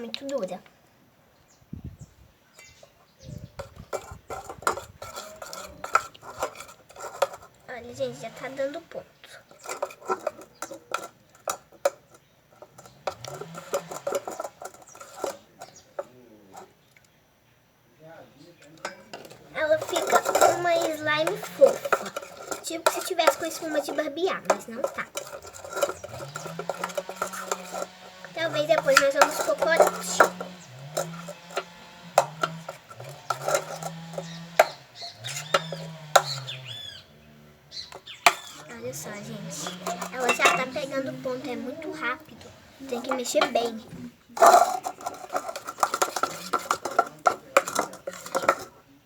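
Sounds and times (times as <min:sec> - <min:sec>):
spoon scraping bowl: 0:03.6 - 0:16.8, 0:18.8 - 0:48.8
spoon stirring slime: 0:19.6 - 0:31.5, 0:38.0 - 0:42.2.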